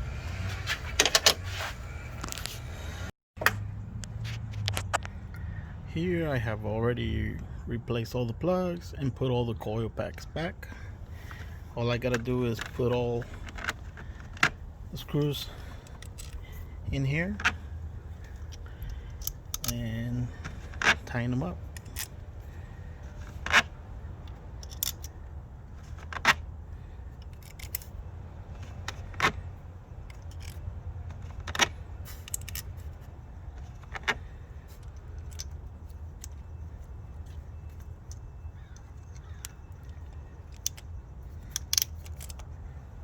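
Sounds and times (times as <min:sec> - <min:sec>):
metal screws clicking: 0:17.3 - 0:26.4, 0:27.1 - 0:42.7.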